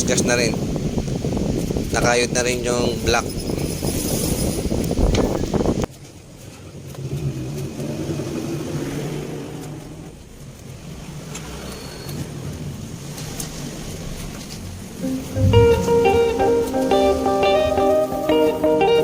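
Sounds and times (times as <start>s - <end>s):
guitar music: 15.0s - 19.0s.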